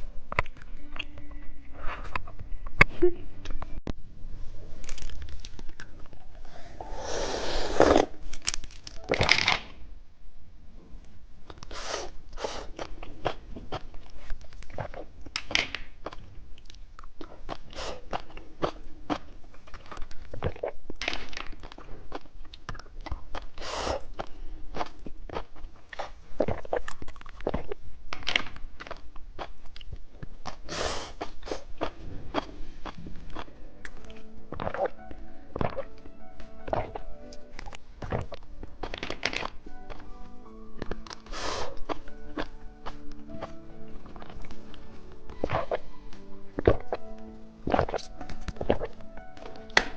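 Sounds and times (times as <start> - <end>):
candy crunching while chewed: 4.7 - 6.4, 7.7 - 9.4, 12.4 - 36.0, 36.6 - 49.9.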